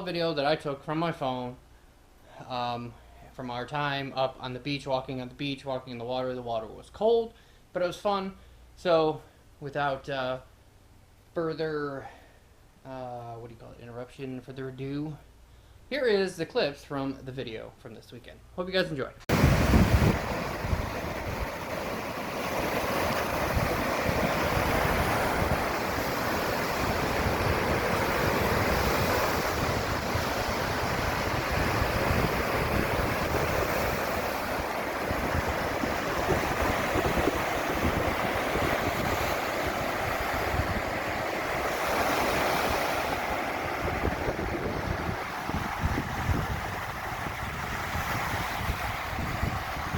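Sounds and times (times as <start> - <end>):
waves breaking on a beach: 19.3 - 49.9
wind buffeting the microphone: 19.3 - 49.9.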